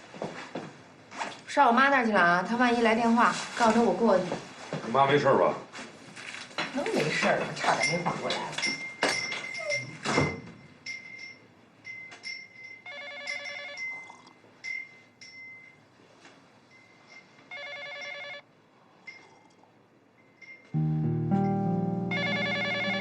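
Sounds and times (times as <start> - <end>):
electronic telephone ring: 12.9 - 14.0, 17.5 - 18.4, 20.8 - 23.0.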